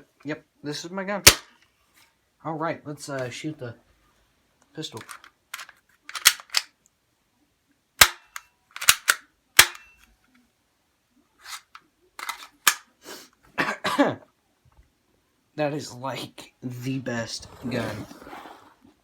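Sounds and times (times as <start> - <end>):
airsoft pistol shots: 1.3 - 1.5, 8.0 - 9.8.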